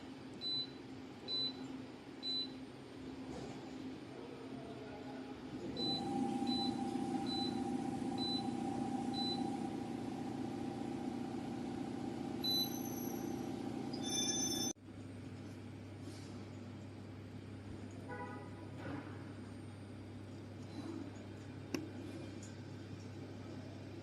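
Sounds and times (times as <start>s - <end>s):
machine humming: 5.8s - 14.8s
short high beeps: 12.4s - 14.7s.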